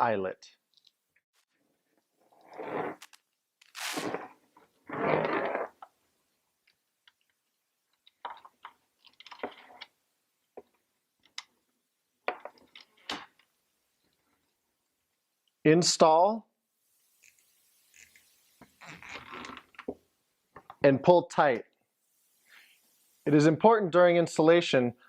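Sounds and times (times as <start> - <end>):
rustling scrapes of wire: 2.4 - 5.8.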